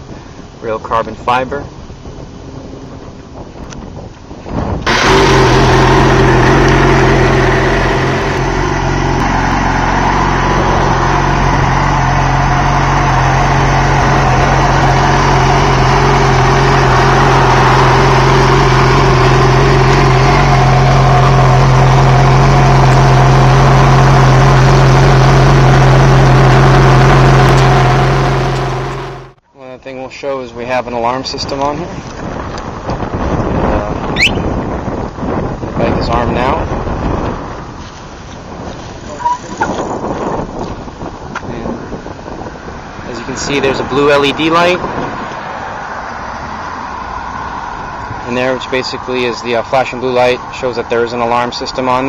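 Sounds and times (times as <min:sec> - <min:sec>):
motorcycle engine idling: 0:10.2 - 0:29.3.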